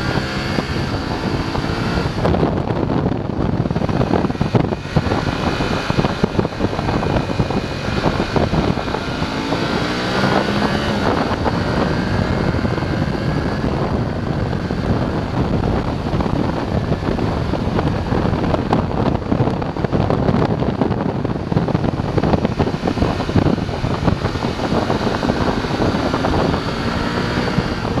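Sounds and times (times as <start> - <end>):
motorcycle engine running: 0.0 - 28.0
wind rush on microphone: 0.0 - 28.0.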